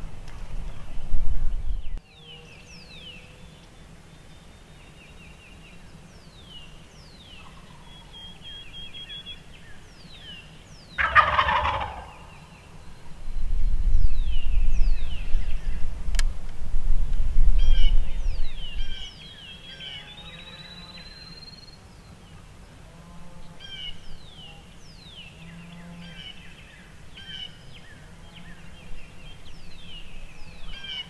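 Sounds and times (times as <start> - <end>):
wind rumble on microphone: 0.0 - 2.0, 12.0 - 19.2
small birds chirping: 0.4 - 16.0, 17.0 - 31.0
turkey gobbling: 11.0 - 12.5, 30.7 - 31.0
sharp click: 16.1 - 16.3.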